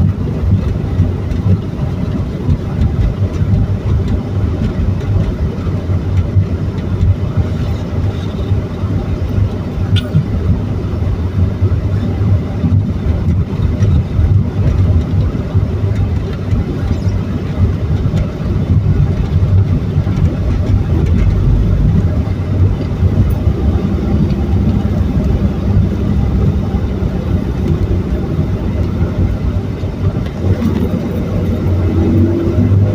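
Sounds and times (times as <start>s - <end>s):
road noise: 0.0s - 32.9s
vehicle engine rumble: 0.0s - 32.9s.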